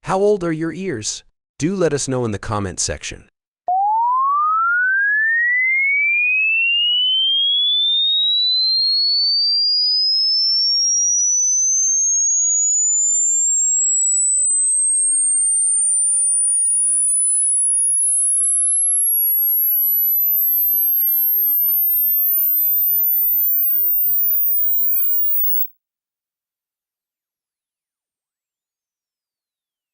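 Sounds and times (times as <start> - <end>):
rising sine test tone: 3.7 - 25.7.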